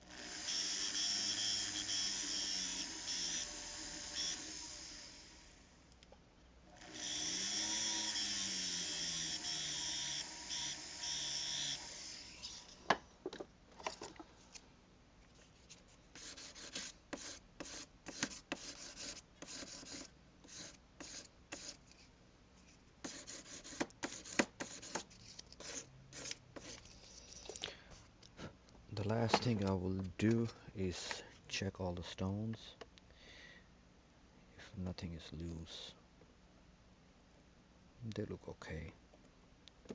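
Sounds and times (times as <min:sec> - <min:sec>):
small motor running: 0:00.0 - 0:05.7, 0:06.8 - 0:12.7.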